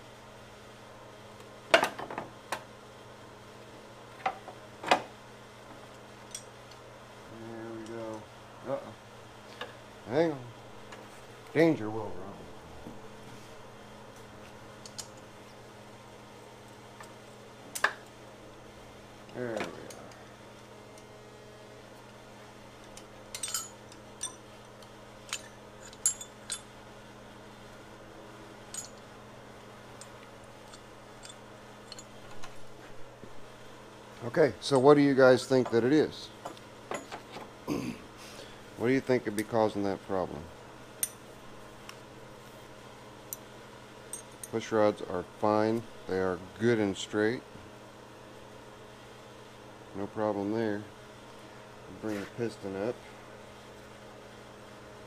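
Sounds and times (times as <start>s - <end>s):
steady low hum: 0.0s - 55.0s
metal tools clinking: 22.8s - 24.4s, 25.3s - 26.7s, 28.7s - 29.0s, 30.0s - 32.6s.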